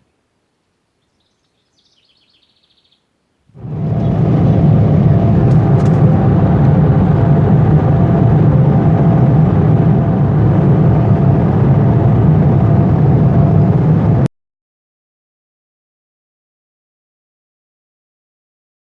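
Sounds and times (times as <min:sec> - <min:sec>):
faint hum: 0:03.5 - 0:14.3
vehicle rumble: 0:03.5 - 0:14.3.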